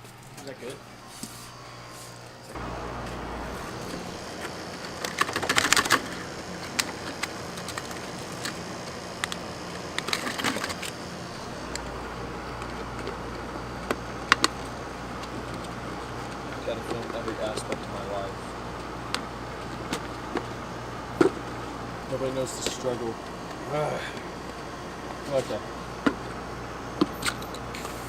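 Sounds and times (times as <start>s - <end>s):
steady low hum: 0.0s - 28.0s
clicking and rattling of handled things: 4.4s - 8.6s, 9.2s - 11.0s.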